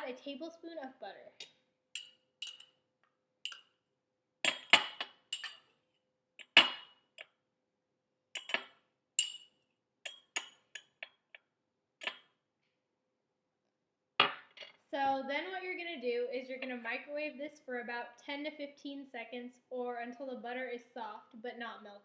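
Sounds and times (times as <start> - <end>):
spoon clinking against a mug: 1.4 - 2.7, 3.5 - 3.7, 4.4 - 5.7, 8.4 - 9.5, 10.1 - 11.0.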